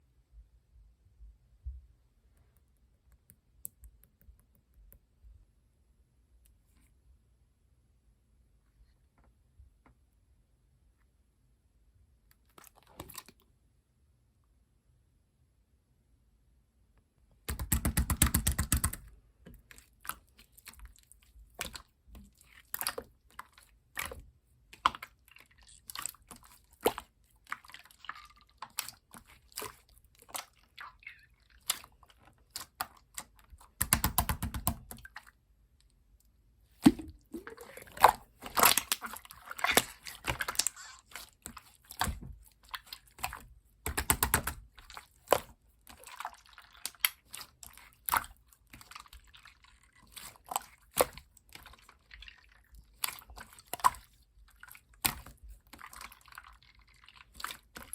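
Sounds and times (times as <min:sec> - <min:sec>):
slime air bubbles popping: 0:36.8 - 0:39.0
slime squished by hand: 0:36.8 - 0:57.9.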